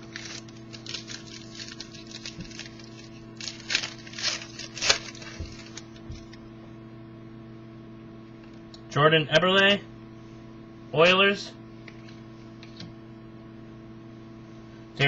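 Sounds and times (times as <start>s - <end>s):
trading cards rustling: 0.0s - 6.4s
electrical hum: 0.0s - 15.0s.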